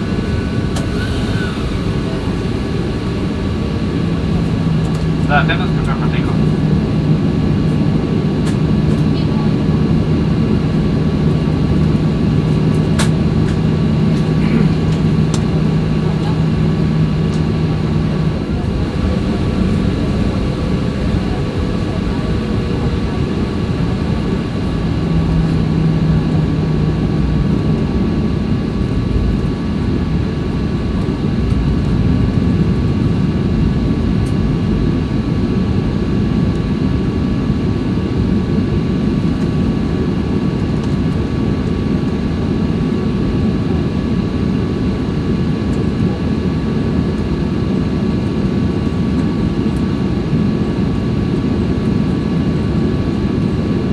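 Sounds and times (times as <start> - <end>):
jet engine rumble in cabin: 0.0 - 53.9
thin steady whine: 0.0 - 53.9.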